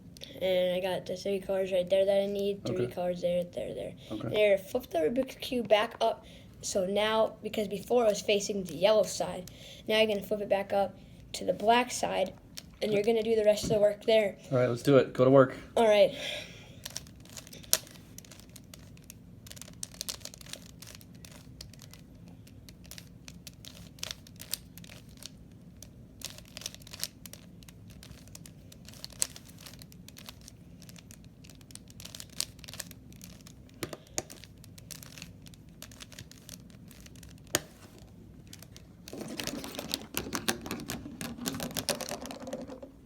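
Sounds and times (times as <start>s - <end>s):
puzzle cube clicking and rattling: 16.8s - 43.0s.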